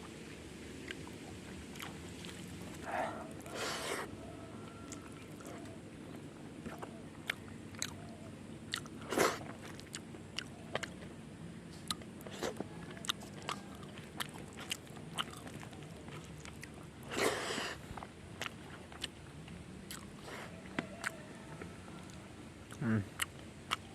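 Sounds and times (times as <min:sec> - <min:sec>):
person chewing and crunching: 0:00.8 - 0:04.0, 0:04.8 - 0:08.1, 0:08.7 - 0:11.1, 0:11.8 - 0:21.2.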